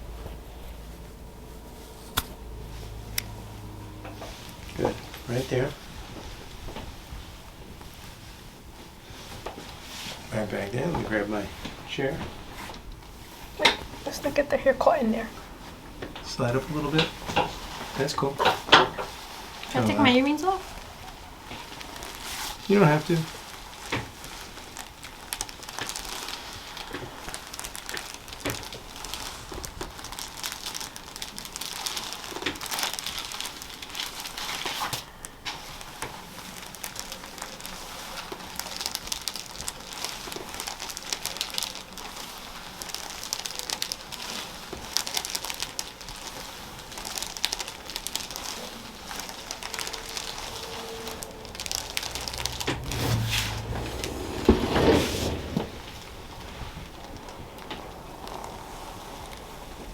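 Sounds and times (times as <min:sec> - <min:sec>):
small crackles: 0:00.2 - 0:59.9
hands rustling over hair and clothing: 0:46.1 - 0:59.9.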